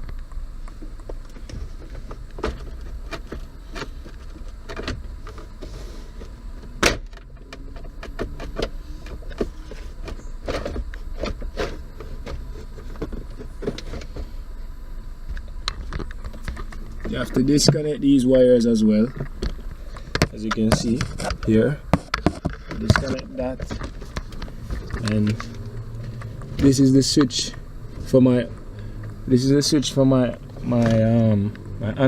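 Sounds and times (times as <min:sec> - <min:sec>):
low steady rumble: 0:00.0 - 0:32.0.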